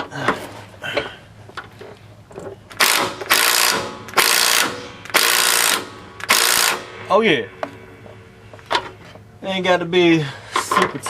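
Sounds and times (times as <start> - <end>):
ratchet wrench clicking: 2.7 - 6.8.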